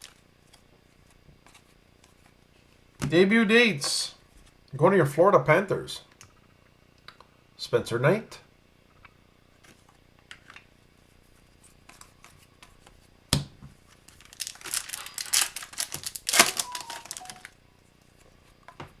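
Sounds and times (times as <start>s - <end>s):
wrapper ripping and rustling: 13.9s - 17.5s.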